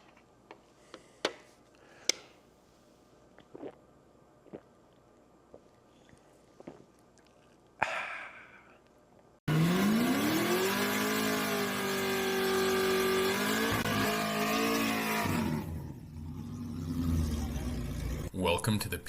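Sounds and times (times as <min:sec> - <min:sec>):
car engine revving: 0:09.5 - 0:18.3.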